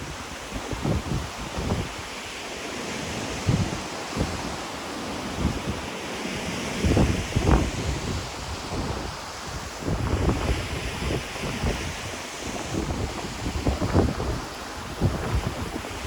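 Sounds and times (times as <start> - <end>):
wind buffeting microphone: 0.0 - 2.2, 2.9 - 16.0
ocean surf on shore: 0.0 - 16.0.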